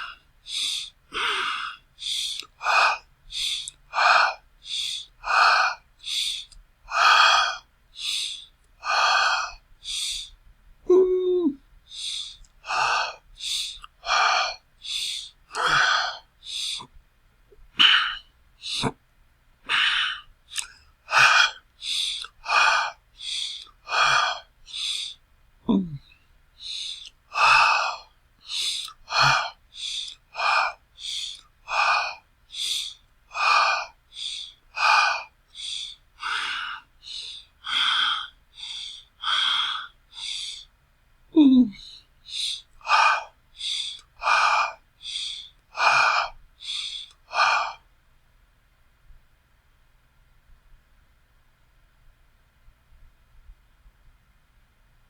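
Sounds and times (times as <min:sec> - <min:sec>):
person panting: 0:00.0 - 0:10.3, 0:10.9 - 0:16.9, 0:17.7 - 0:19.0, 0:19.6 - 0:40.7, 0:41.4 - 0:47.8.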